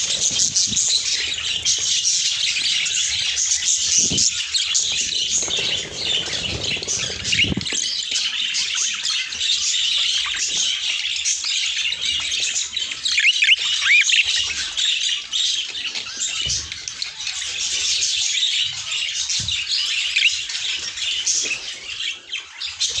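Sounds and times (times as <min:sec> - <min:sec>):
budgerigars chattering: 0:00.0 - 0:07.9, 0:08.9 - 0:15.6
bird whistles: 0:13.1 - 0:14.4.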